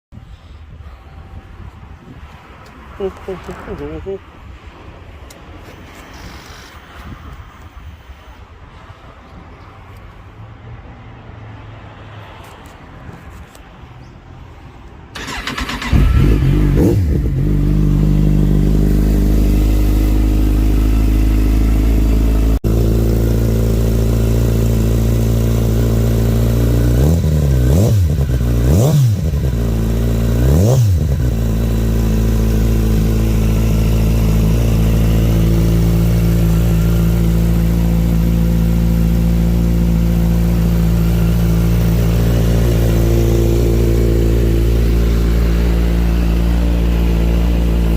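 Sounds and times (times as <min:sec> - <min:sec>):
motorcycle engine starting and revving: 0:15.2 - 0:47.9.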